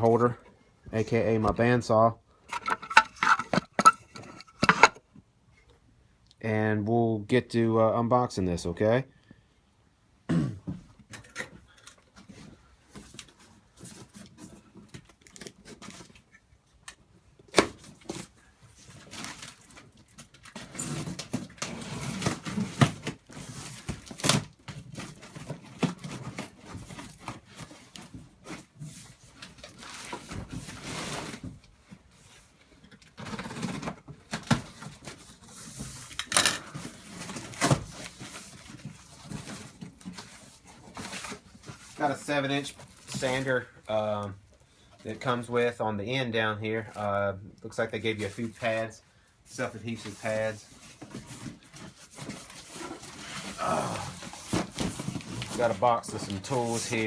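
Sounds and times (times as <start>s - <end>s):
cardboard rustling and tearing: 17.6s - 32.5s, 33.1s - 43.6s, 49.9s - 57.0s.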